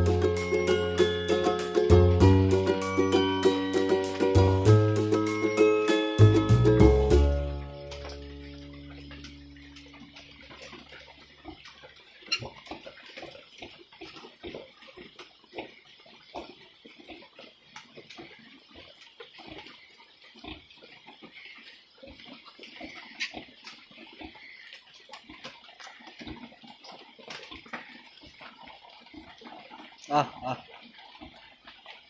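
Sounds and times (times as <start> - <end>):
music: 0.0 - 9.9
piglet squeaks: 12.3 - 12.5.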